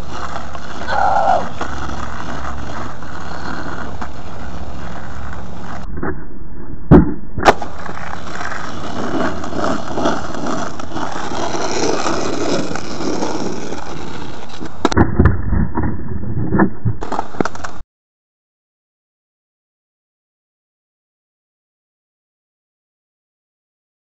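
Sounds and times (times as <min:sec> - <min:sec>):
skateboard clacking: 0:00.0 - 0:05.9, 0:07.4 - 0:15.0, 0:17.0 - 0:17.8
skateboard wheels rolling on pavement: 0:00.0 - 0:05.9, 0:07.4 - 0:15.0, 0:16.8 - 0:17.8.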